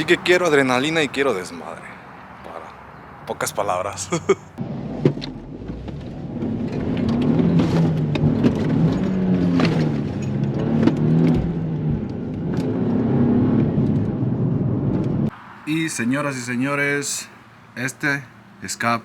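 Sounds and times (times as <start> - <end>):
car engine revving: 4.6 - 15.3.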